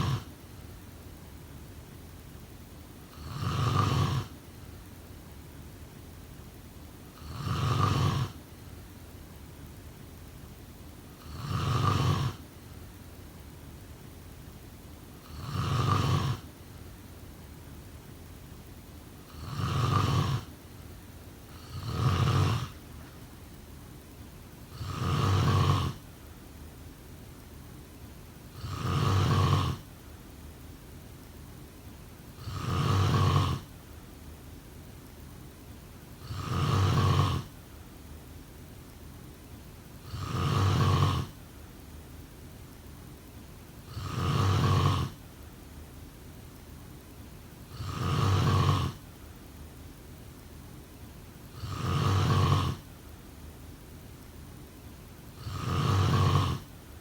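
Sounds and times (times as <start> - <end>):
person snoring: 0.0 - 0.3, 3.1 - 4.4, 7.2 - 8.4, 11.2 - 12.4, 15.2 - 16.5, 19.3 - 20.5, 21.5 - 22.8, 24.7 - 26.0, 28.5 - 29.8, 32.4 - 33.7, 36.2 - 37.5, 40.0 - 41.4, 43.8 - 45.2, 47.7 - 49.0, 51.5 - 52.9, 55.4 - 56.7.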